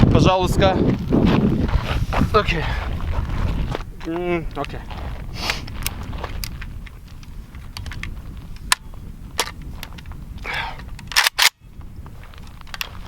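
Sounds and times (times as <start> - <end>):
steady low rumble: 0.5 - 10.5
rifle metallic clicks: 11.0 - 11.6.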